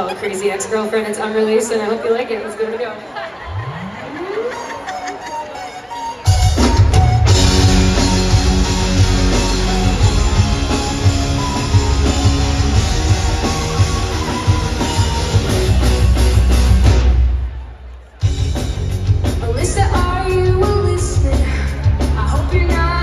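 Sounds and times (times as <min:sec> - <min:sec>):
live rock band playing: 0:04.4 - 0:17.4, 0:18.2 - 0:23.0.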